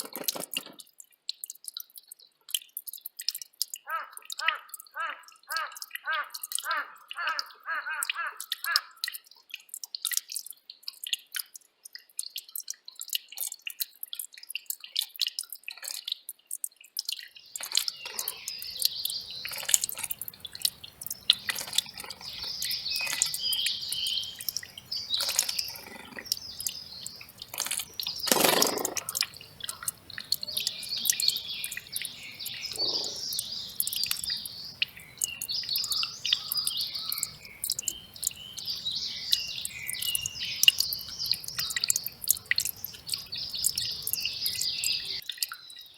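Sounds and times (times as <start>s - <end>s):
small birds chirping: 0.0s - 45.9s
water dripping and plinking: 0.0s - 45.9s
running water rushing: 17.6s - 45.2s.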